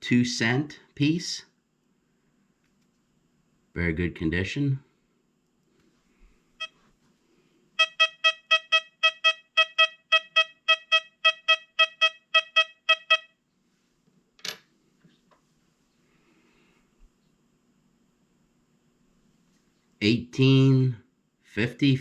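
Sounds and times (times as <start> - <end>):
metal detector short beeps: 7.8 - 13.3.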